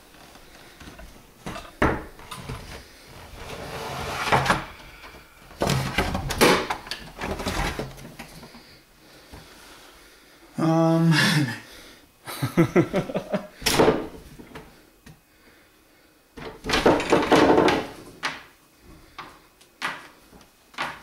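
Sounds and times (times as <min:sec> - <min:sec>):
door scraping: 0:01.5 - 0:05.0.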